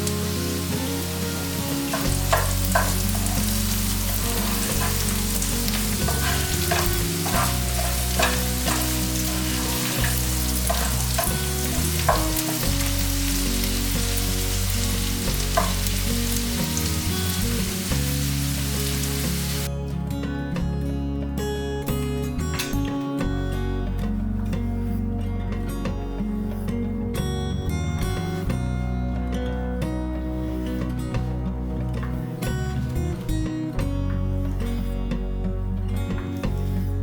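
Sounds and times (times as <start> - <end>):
food sizzling in a pan: 0.0 - 19.7
utensil clicking against pan: 1.6 - 13.8, 14.8 - 16.6.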